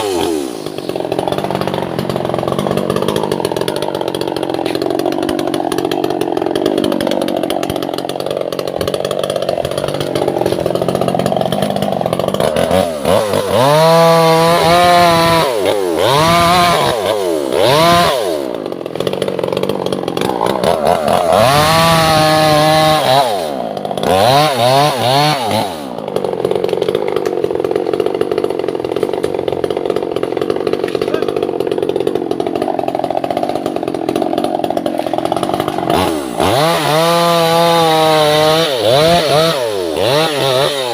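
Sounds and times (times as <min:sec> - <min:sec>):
chainsaw revving and cutting wood: 0:00.0 - 0:40.9.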